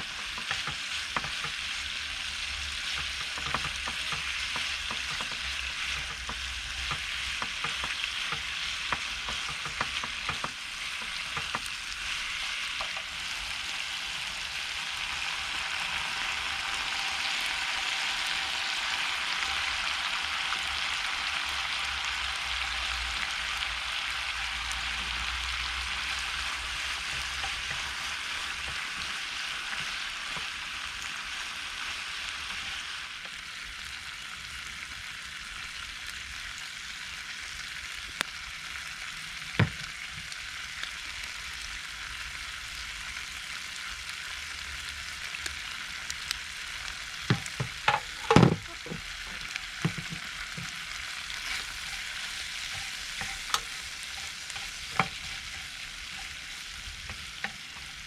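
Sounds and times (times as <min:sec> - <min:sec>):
utensil scraping pan: 0:00.0 - 0:01.8, 0:02.7 - 0:13.3, 0:24.8 - 0:30.8, 0:47.3 - 0:58.0
food sizzling in frying pan: 0:00.0 - 0:58.0.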